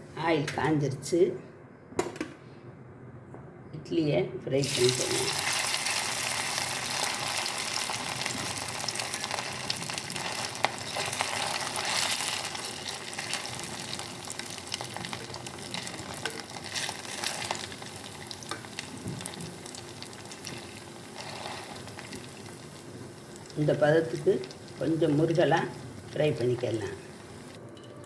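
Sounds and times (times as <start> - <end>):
food frying in hot oil: 4.6 - 27.6.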